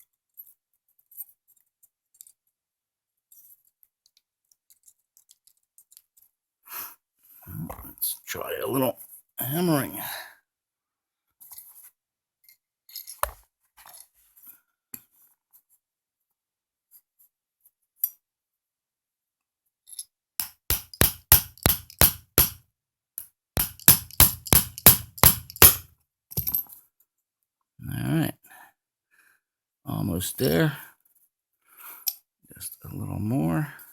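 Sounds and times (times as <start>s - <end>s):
small hammer tapping metal pin: 20.4s - 22.6s, 23.6s - 25.8s.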